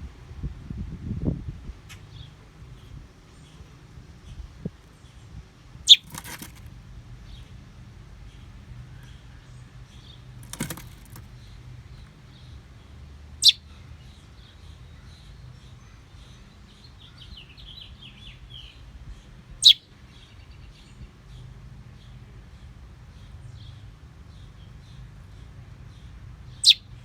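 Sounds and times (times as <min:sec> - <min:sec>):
brief rustling: 0:05.9 - 0:06.7, 0:10.4 - 0:11.3
small bird chirping: 0:05.9 - 0:06.7, 0:13.4 - 0:13.6, 0:19.6 - 0:20.4, 0:26.5 - 0:27.0.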